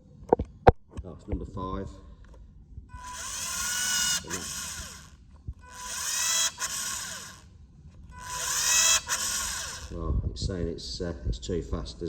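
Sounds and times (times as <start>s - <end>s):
caulking gun motor whining: 2.9s - 10.0s.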